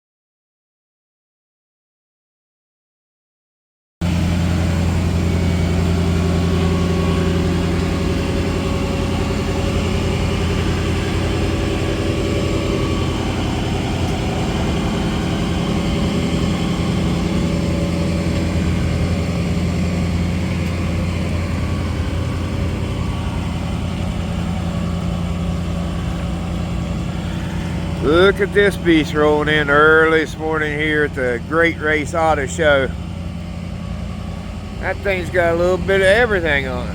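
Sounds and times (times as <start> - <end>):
car engine idling: 4.0 - 36.9.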